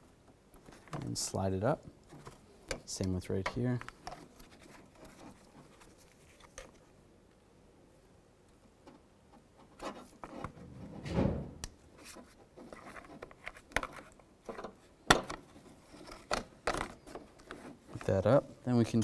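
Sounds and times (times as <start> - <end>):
dull bump: 10.6 - 11.7.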